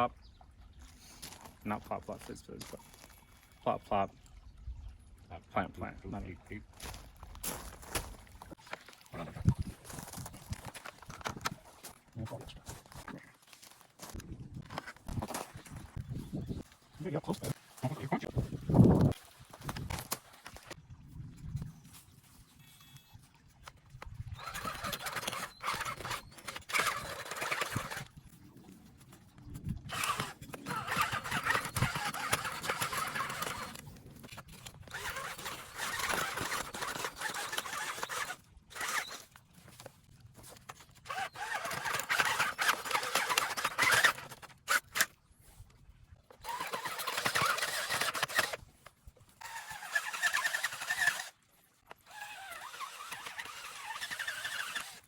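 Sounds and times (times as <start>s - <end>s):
power drill boring into soil: 24.4s - 28.2s, 29.9s - 39.3s, 40.5s - 45.1s, 46.4s - 48.6s, 49.4s - 55.0s.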